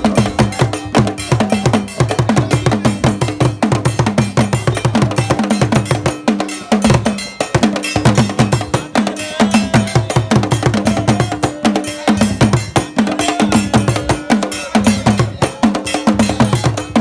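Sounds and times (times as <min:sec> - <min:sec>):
bell knocking time: 0:00.0 - 0:17.0
drum ensemble playing: 0:00.0 - 0:17.0.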